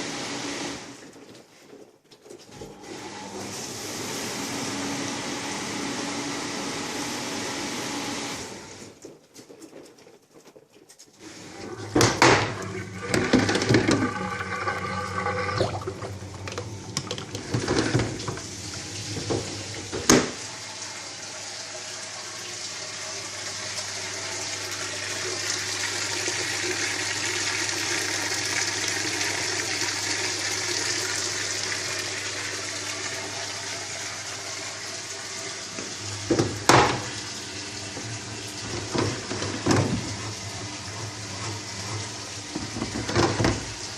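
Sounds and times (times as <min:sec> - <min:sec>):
dishwasher water spraying: 0:11.2 - 0:43.9.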